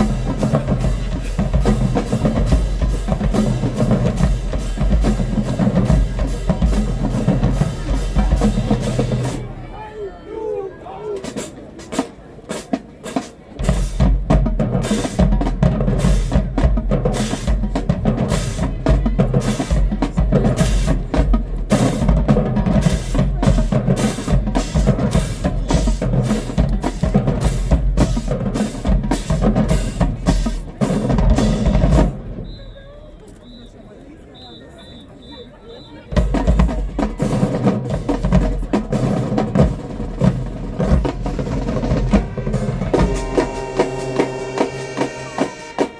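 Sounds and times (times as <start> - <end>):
bass drums: 0.0 - 9.5, 13.6 - 32.5, 36.1 - 45.9
snare drums playing cadence: 39.0 - 45.9.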